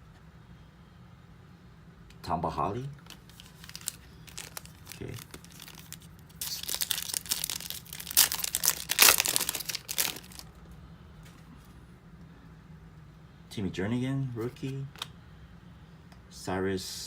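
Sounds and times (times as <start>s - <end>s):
foil wrapper tearing and crinkling: 3.0s - 10.5s.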